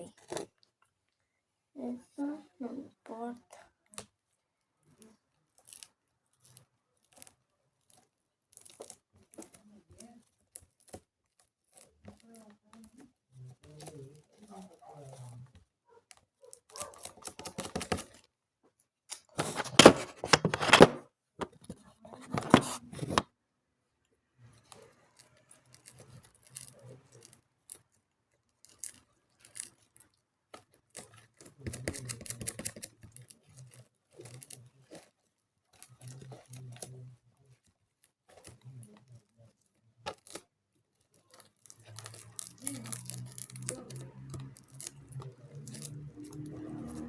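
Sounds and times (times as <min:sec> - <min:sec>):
slime squelching and crackling: 0:24.5 - 0:47.0.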